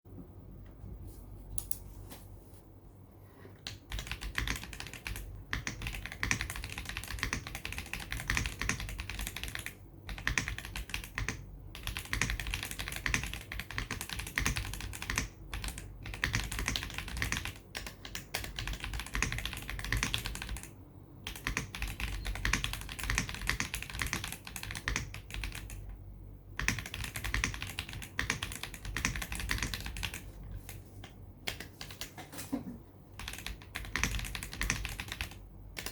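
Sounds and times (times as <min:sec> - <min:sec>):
fast typing on mechanical keyboard: 0:03.6 - 0:26.0, 0:26.6 - 0:32.2, 0:33.2 - 0:35.9.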